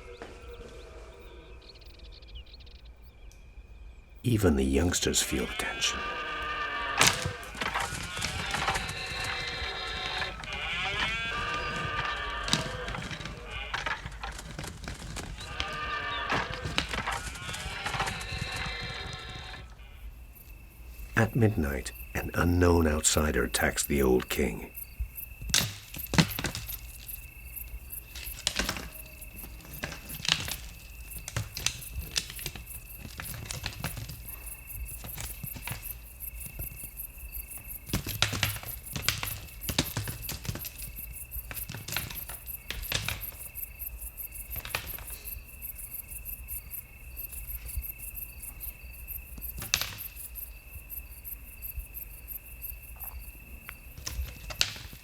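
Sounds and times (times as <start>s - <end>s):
crickets chirping: 0.0s - 55.0s
antlers clashing: 4.3s - 19.7s, 20.9s - 37.0s.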